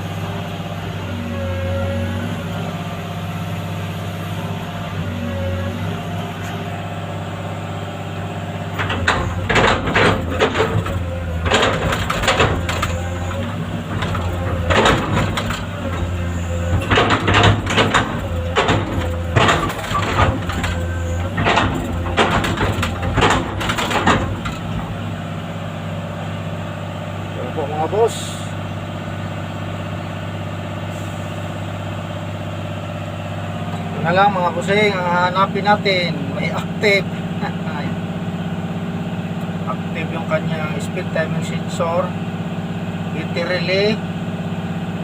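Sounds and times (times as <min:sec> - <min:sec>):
diesel engine running: 0:00.0 - 0:45.0
short clattering noises: 0:08.8 - 0:25.0.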